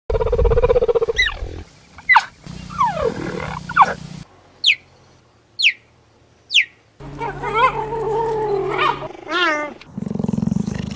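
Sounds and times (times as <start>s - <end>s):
cheetah chirping: 0.2s - 4.9s, 5.6s - 5.9s, 6.5s - 6.8s.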